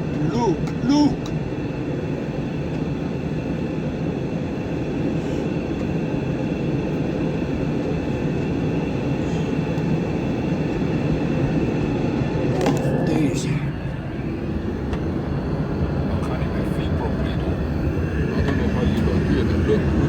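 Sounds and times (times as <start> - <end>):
airliner engines rumbling: 0.0 - 20.0.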